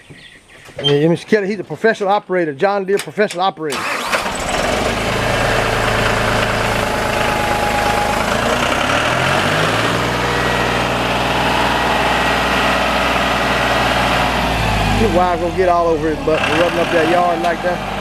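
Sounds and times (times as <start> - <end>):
tractor engine idling and revving: 3.7 - 18.0.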